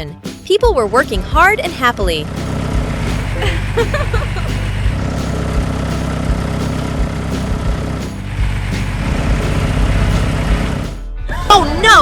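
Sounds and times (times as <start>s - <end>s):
diesel engine running: 1.5s - 11.1s.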